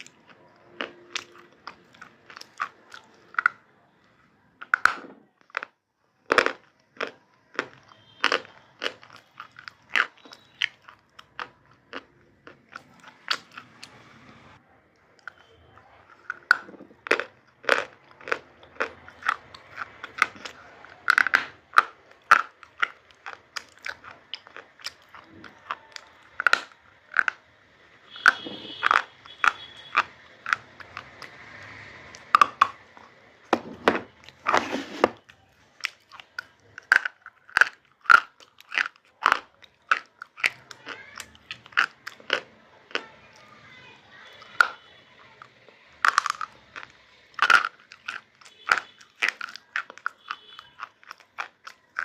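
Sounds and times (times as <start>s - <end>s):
crunchy food chewing: 0.0s - 52.0s.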